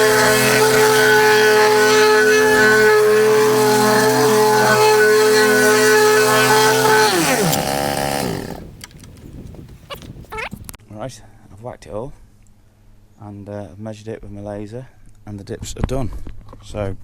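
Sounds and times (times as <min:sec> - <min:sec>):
plate compactor engine running: 0:00.0 - 0:08.6.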